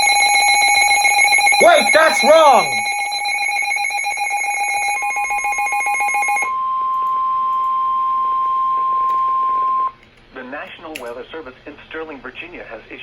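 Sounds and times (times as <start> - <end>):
pulsing buzzing alarm tone: 0.0 - 9.9.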